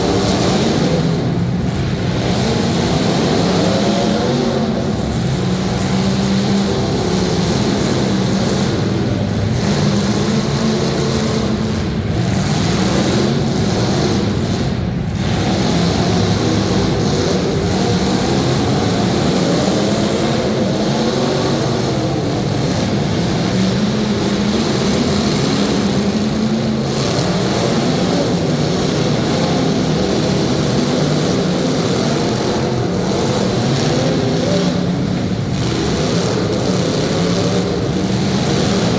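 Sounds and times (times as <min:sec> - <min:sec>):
car engines revving: 0:00.0 - 0:38.9.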